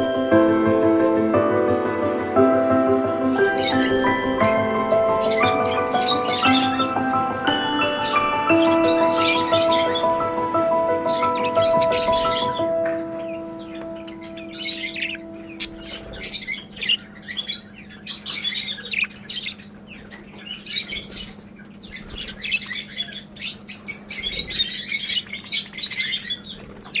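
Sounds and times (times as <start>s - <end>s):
held musical tones: 0.0s - 17.2s
budgerigars chattering: 11.0s - 27.0s.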